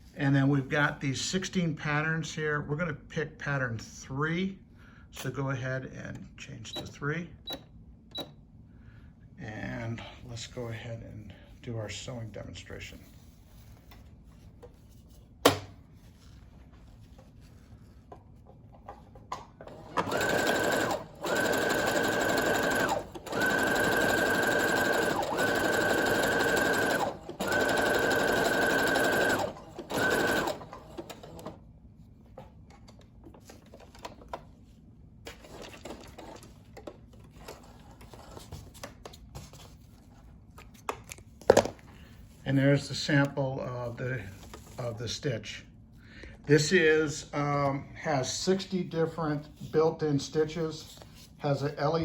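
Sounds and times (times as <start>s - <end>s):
sewing machine motor whine: 19.6s - 31.5s.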